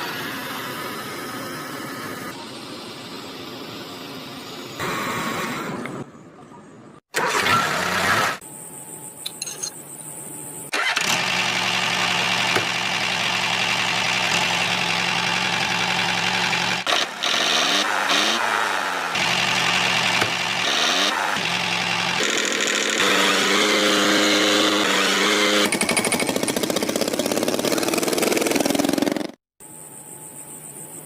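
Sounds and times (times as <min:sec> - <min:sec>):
model tractor motor running: 0:10.8 - 0:29.3.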